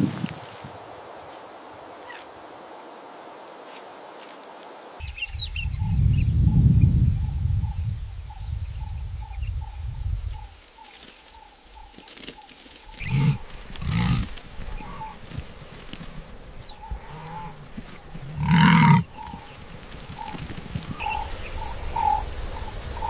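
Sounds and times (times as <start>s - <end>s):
large animal deep calls: 13.0s - 15.4s, 16.6s - 19.6s.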